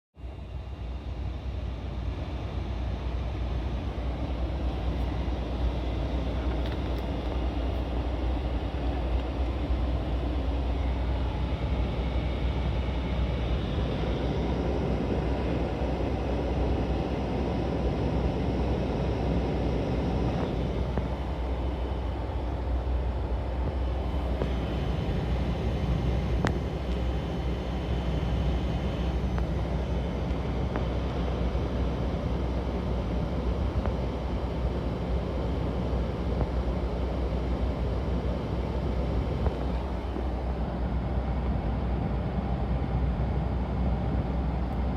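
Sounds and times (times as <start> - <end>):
car engine running: 0.2 - 41.6.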